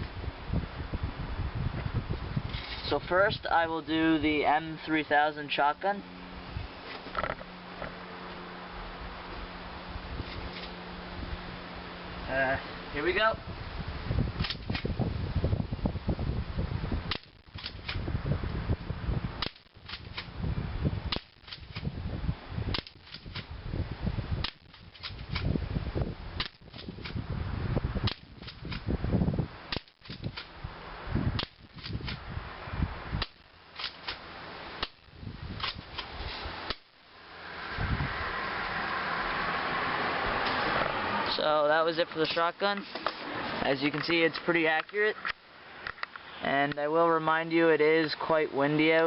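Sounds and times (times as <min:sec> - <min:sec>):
airsoft shotgun snaps and clacks: 0:14.4 - 0:14.9, 0:17.1 - 0:18.0, 0:19.4 - 0:20.3, 0:21.1 - 0:21.9, 0:22.7 - 0:23.5, 0:24.4 - 0:25.5, 0:28.0 - 0:28.9, 0:29.7 - 0:30.5, 0:31.4 - 0:32.2, 0:33.2 - 0:34.2, 0:34.8 - 0:35.0, 0:35.6 - 0:36.1.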